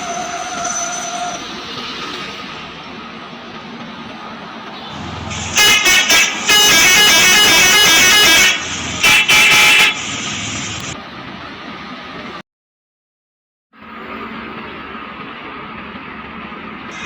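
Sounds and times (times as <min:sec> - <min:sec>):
bus rumble: 0:00.0 - 0:12.4, 0:13.8 - 0:17.0
bus horn toots and tune: 0:05.0 - 0:11.0.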